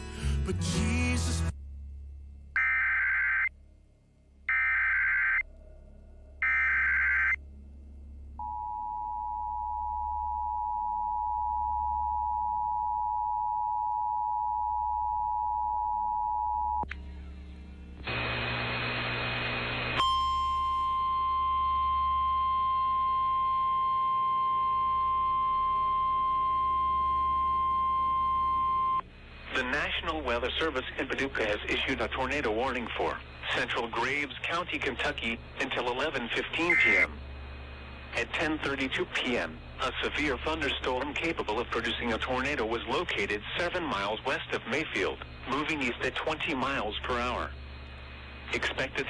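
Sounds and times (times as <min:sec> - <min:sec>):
data header bursts: 0:31.4 - 0:37.1.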